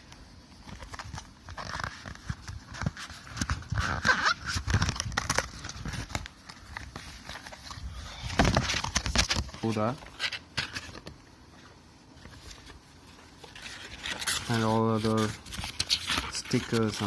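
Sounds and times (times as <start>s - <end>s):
cardboard packaging rustling and knocking: 1.8s - 10.0s.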